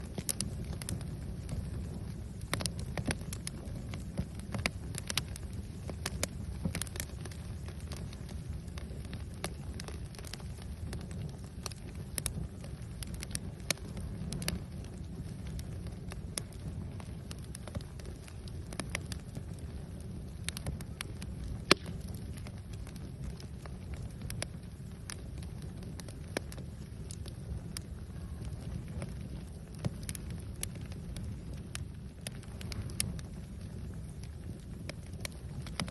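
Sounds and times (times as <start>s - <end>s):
fire crackling and popping: 0.0s - 35.9s.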